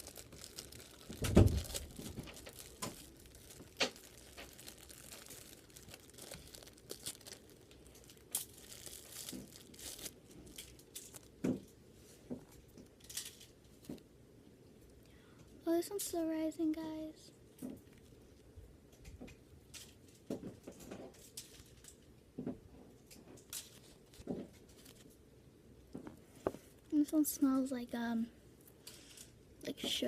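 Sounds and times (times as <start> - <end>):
plastic packaging crinkling: 0.0 - 11.7, 19.2 - 22.1, 23.1 - 25.2.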